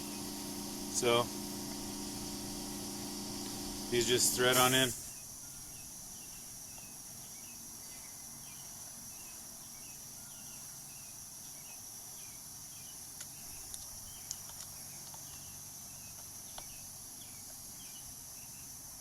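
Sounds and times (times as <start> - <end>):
insects chirring: 0.0 - 19.0
small sharp clicks: 13.2 - 15.5.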